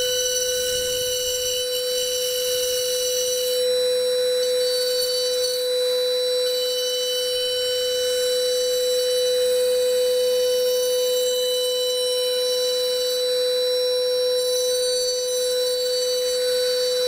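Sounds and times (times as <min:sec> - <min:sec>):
steady machine whine: 0:00.0 - 0:17.0.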